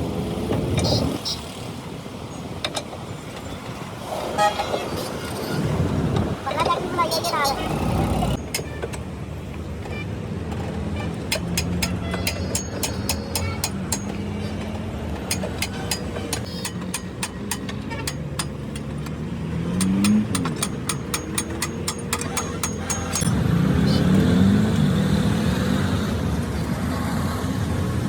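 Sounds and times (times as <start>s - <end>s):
vehicle engine drone: 4.4s - 28.0s
hammer blows on metal: 11.3s - 14.4s, 19.8s - 23.3s.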